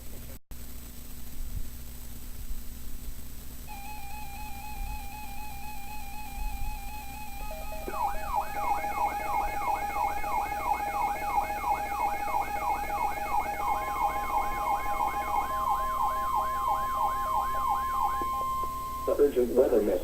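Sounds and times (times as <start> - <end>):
electronic whooping siren: 3.7 - 19.4
steady single-pitch alarm tone: 3.7 - 19.4.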